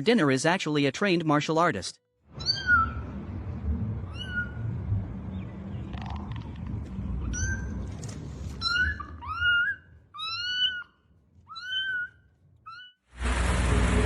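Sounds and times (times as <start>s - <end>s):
cat meowing: 2.4s - 3.0s, 4.1s - 4.6s, 8.6s - 13.0s.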